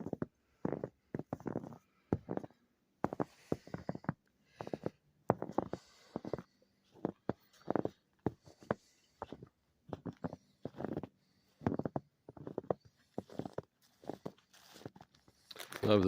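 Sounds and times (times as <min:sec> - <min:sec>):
footsteps crunching in snow: 0:04.6 - 0:16.0.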